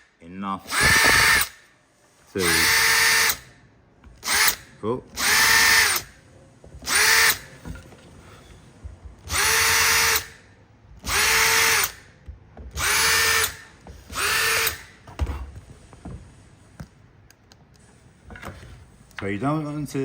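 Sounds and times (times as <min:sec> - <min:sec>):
power drill whining: 0:00.6 - 0:01.7, 0:02.4 - 0:03.5, 0:04.2 - 0:06.2, 0:06.8 - 0:10.4, 0:11.0 - 0:12.1, 0:12.8 - 0:15.1.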